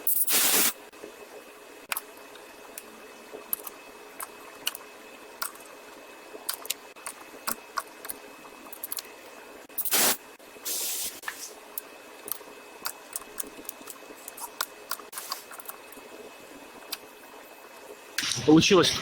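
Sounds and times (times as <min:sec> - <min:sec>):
faint hum: 0:00.0 - 0:19.0
short hiss: 0:00.1 - 0:00.8, 0:09.8 - 0:11.6.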